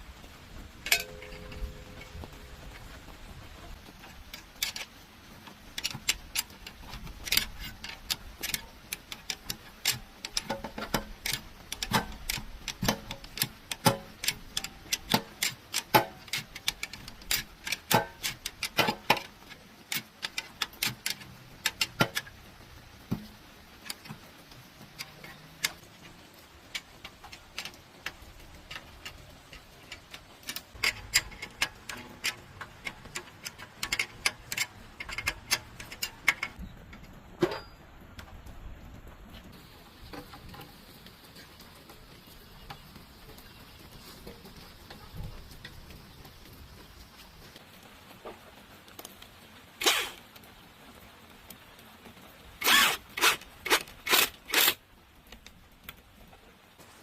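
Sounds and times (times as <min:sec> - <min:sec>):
hand tools clicking on metal: 0:03.8 - 0:37.8, 0:49.8 - 0:50.2, 0:52.6 - 0:56.0.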